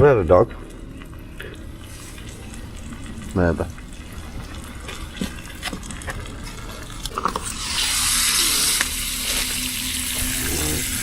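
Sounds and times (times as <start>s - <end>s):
food sizzling in a pan: 1.8s - 5.6s, 7.2s - 11.0s.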